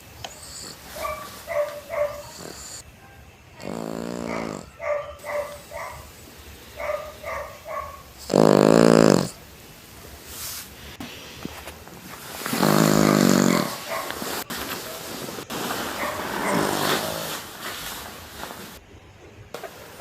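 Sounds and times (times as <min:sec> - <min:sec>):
dog snoring: 0:00.0 - 0:02.8, 0:03.6 - 0:06.0, 0:07.0 - 0:09.4, 0:12.4 - 0:14.4, 0:15.9 - 0:17.5.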